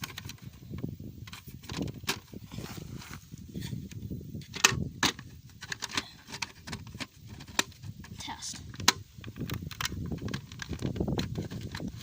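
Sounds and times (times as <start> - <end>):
plastic alarm clicks and knocks: 4.5 - 7.7.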